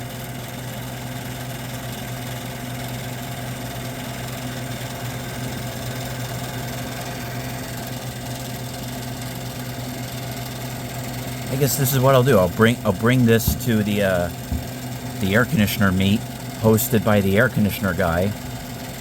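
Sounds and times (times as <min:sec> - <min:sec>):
air conditioner humming: 0:03.9 - 0:19.0.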